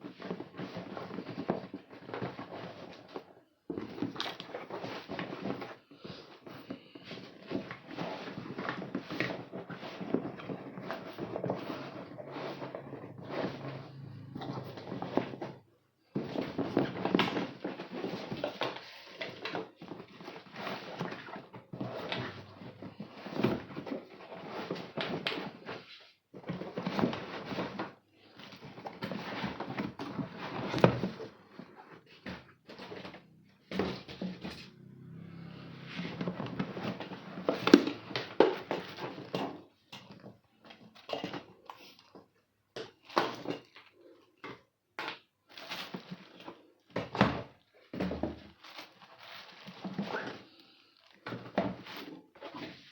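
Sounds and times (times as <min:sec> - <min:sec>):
rustling: 0:47.6 - 0:52.9.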